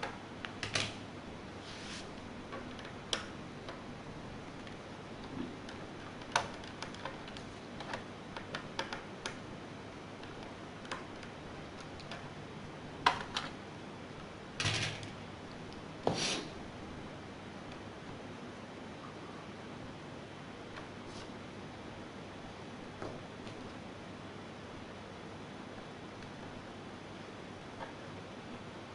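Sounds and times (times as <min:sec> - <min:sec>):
laptop parts clicking: 0:05.6 - 0:09.4.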